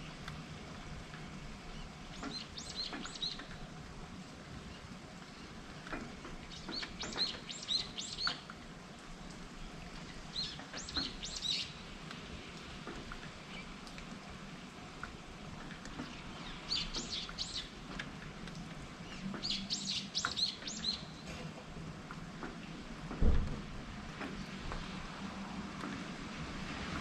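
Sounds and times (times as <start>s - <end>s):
rain falling: 0.0s - 27.0s
songbird chirping: 1.7s - 3.7s, 6.4s - 8.5s, 16.0s - 17.8s, 19.0s - 21.2s.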